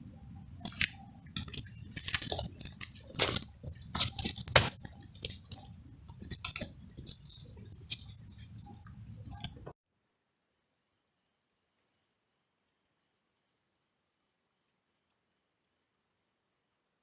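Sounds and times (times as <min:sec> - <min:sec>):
crunching and rustling handling: 0:00.0 - 0:09.7.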